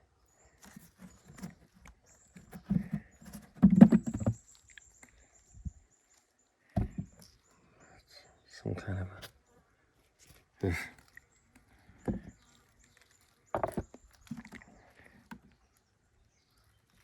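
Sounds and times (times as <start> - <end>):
wooden hive frames scraping: 0.5 - 4.6
wooden clunk: 2.4 - 4.4, 6.8 - 7.3, 12.0 - 12.4, 13.5 - 14.6.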